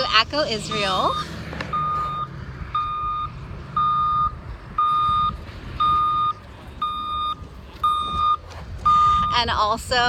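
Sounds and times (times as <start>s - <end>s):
reversing alarm beeping: 0.6s - 9.7s.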